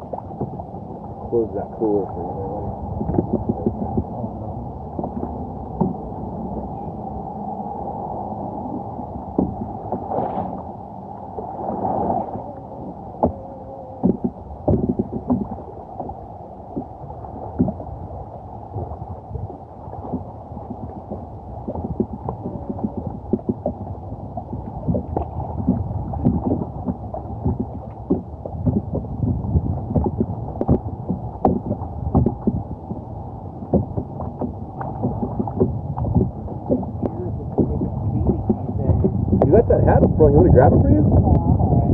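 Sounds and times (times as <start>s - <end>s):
water sloshing around kayak: 0.0s - 41.9s
small knocks on kayak: 9.4s - 10.5s, 14.0s - 15.6s, 29.9s - 32.6s.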